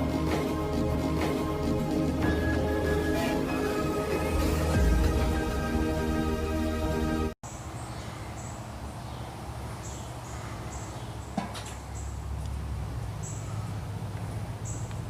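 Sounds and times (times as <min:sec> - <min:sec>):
low steady rumble: 0:00.8 - 0:07.4.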